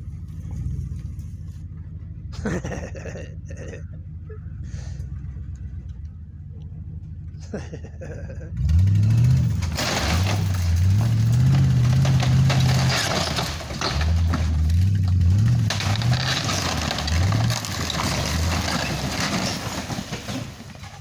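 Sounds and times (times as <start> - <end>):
truck engine revving: 0.0 - 21.0
crackling and rattling: 8.6 - 21.0.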